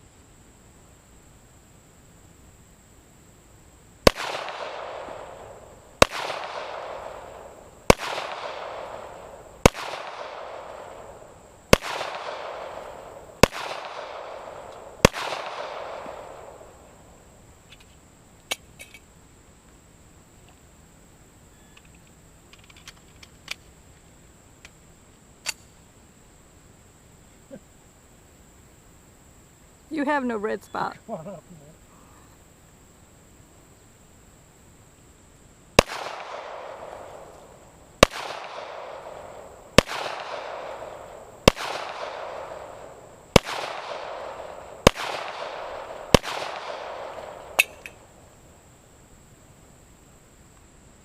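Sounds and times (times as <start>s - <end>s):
pistol shots echoing: 4.1s - 16.7s, 35.8s - 37.3s, 38.0s - 47.9s
faint clicks: 21.7s - 24.8s.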